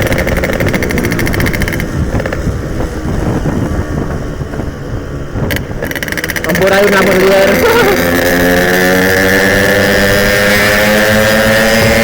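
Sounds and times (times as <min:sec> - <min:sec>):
two-stroke motorcycle engine running: 0:00.0 - 0:12.0
wind on microphone: 0:00.0 - 0:12.0.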